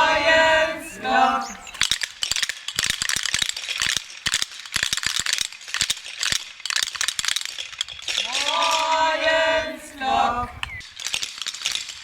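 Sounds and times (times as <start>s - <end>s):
wooden rattles clacking: 1.6s - 9.4s, 10.5s - 12.0s.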